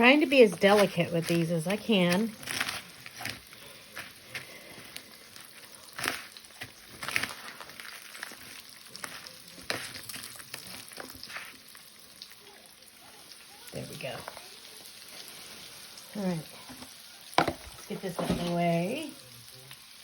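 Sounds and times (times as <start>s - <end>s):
food sizzling in oil: 0.0s - 20.0s.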